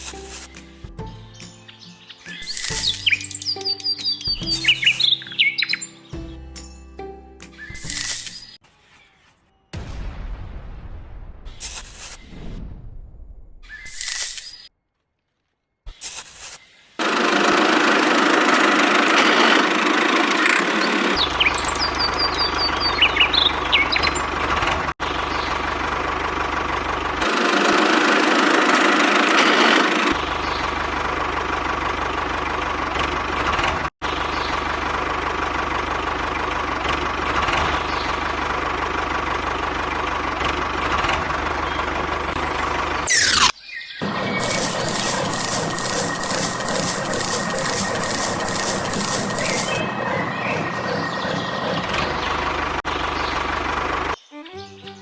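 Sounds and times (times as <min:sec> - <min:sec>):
small vehicle engine running: 0:02.3 - 0:05.8, 0:16.4 - 0:55.0.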